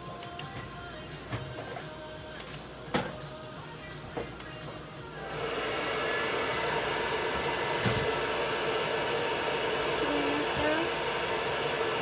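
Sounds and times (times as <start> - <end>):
blow dryer running: 5.2 - 12.0.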